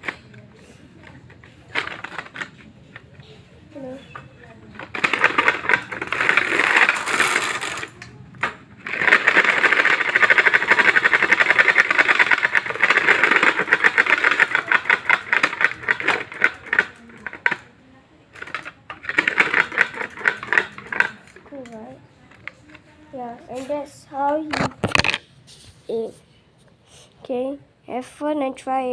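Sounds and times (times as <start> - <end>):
noisemaker clattering clicks: 4.1 - 17.7, 18.4 - 22.6.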